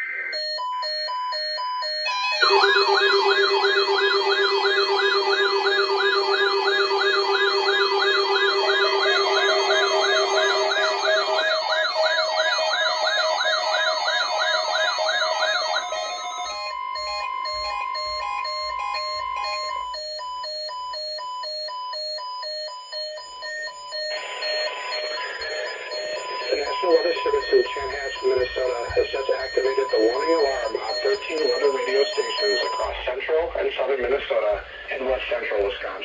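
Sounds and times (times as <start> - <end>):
alternating alarm beeps: 0.3 - 34.9
steady alarm tones: 0.3 - 36.0
warbling siren tones: 1.8 - 20.6, 23.2 - 32.8.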